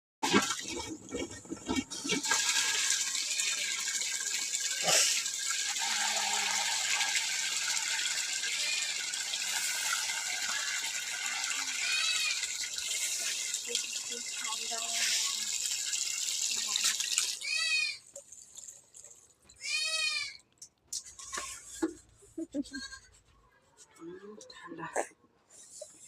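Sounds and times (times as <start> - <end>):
water running: 0.2 - 19.6.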